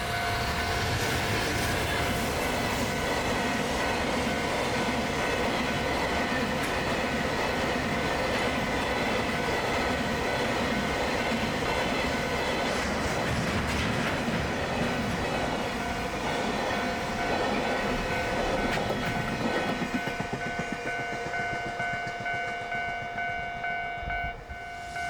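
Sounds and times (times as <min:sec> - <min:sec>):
wheels clattering on rails: 0:00.0 - 0:24.6
freight train rolling past: 0:00.0 - 0:25.0.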